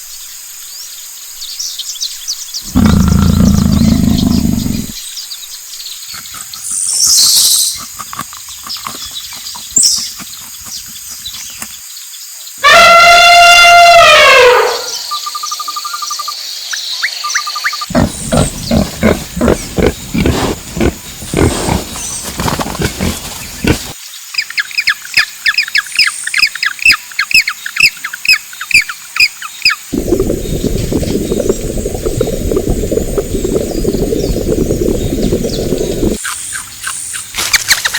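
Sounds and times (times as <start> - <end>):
outdoor ambience: 0.0 - 37.9
animal call falling in pitch: 12.6 - 15.0.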